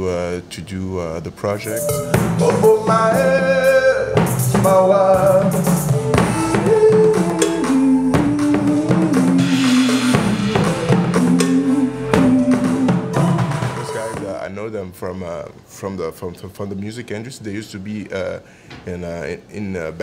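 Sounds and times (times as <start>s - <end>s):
drum kit beat: 1.6s - 14.4s
person singing: 1.6s - 14.4s.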